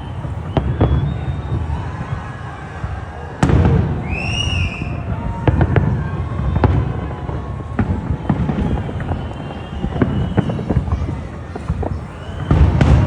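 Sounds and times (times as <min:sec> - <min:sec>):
crackling firework pops: 0:00.0 - 0:13.0
firework boom: 0:00.0 - 0:13.0
firework whistle: 0:00.0 - 0:13.0.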